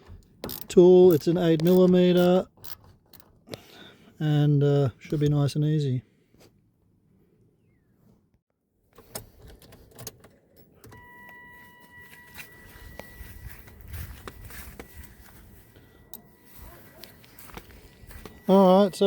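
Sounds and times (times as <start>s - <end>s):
high electronic warning tone: 10.9s - 19.0s.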